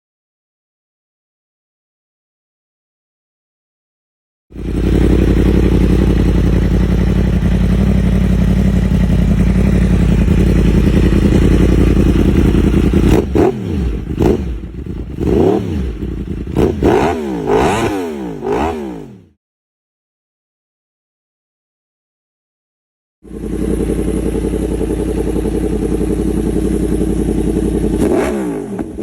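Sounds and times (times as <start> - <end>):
motorcycle engine running: 4.5 - 19.4, 23.2 - 29.0.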